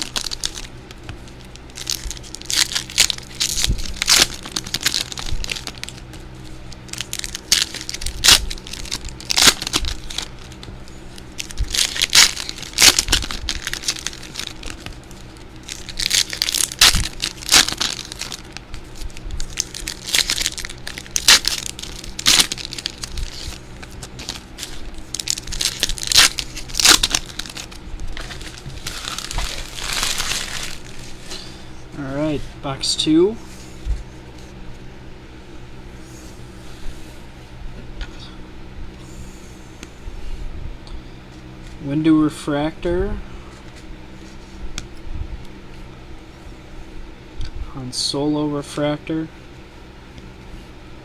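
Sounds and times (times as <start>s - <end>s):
card wrappers crinkling and tearing: 0.0s - 31.4s
low steady hum: 0.0s - 51.0s.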